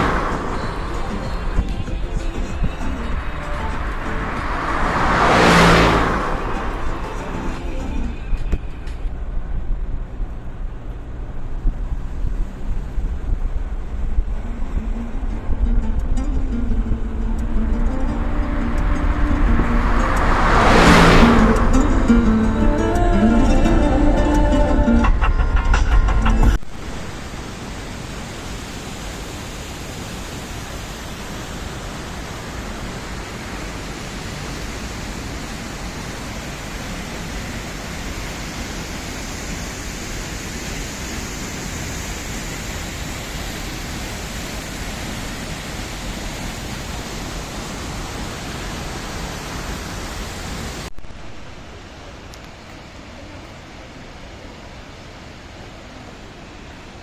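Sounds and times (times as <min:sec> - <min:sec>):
waterfall rushing: 0:00.0 - 0:08.4, 0:26.7 - 0:57.0.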